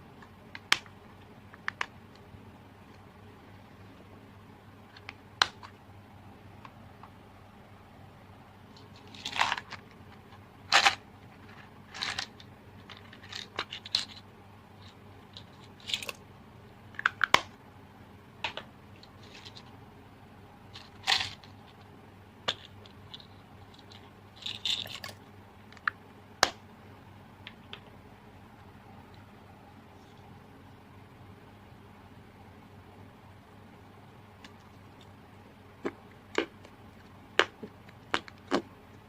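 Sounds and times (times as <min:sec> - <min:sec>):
crunchy pops and crackles: 0:35.8 - 0:38.7.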